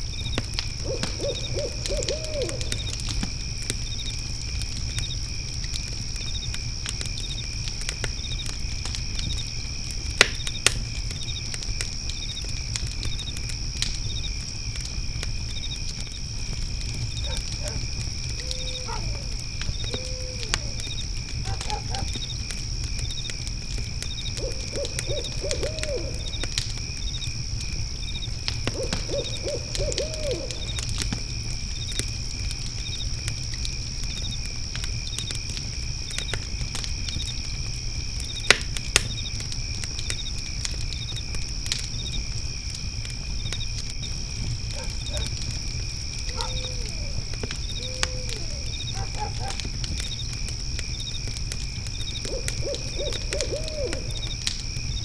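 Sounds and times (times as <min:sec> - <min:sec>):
crickets trilling: 0:00.0 - 0:55.0
fire crackling and popping: 0:00.0 - 0:55.0
owl hooting: 0:00.8 - 0:02.9, 0:18.4 - 0:20.9, 0:24.4 - 0:26.4, 0:28.7 - 0:30.8, 0:46.3 - 0:49.6, 0:52.2 - 0:54.3.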